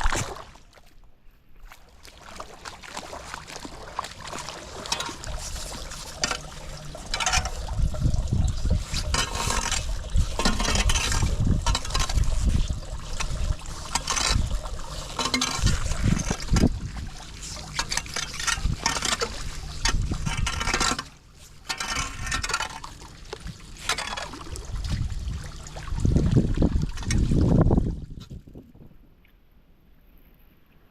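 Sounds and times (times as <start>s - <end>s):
water splashing down storm drain: 1.9s - 28.1s
low rumble: 6.8s - 9.2s.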